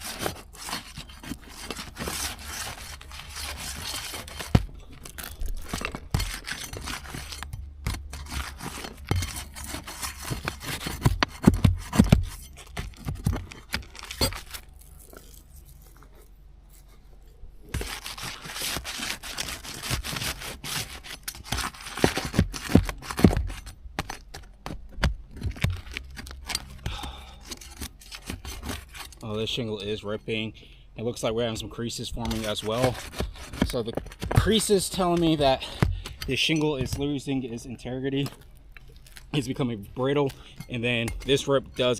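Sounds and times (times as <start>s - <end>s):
roof shingle tearing and scraping: 0.0s - 30.5s, 31.4s - 41.9s.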